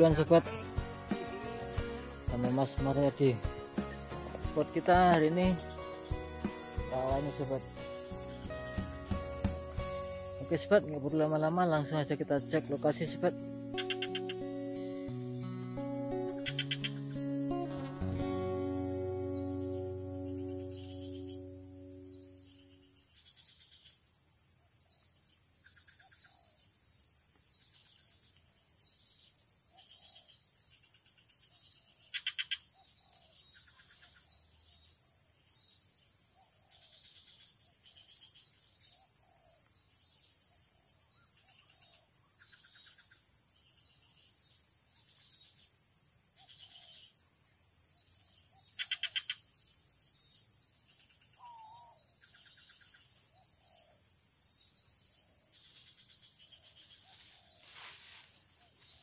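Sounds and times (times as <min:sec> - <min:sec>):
birds calling: 0:00.0 - 0:22.7, 0:51.1 - 0:54.0
high insect drone: 0:00.0 - 0:32.7, 0:33.4 - 0:59.0.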